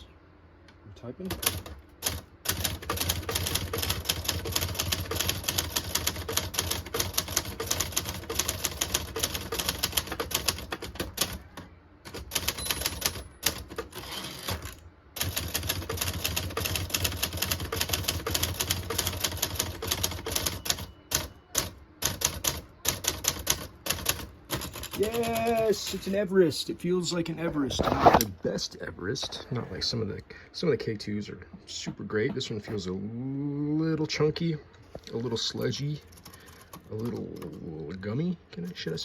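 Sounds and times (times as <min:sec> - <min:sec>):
typewriter keystrokes: 0:01.3 - 0:11.4, 0:12.1 - 0:25.5.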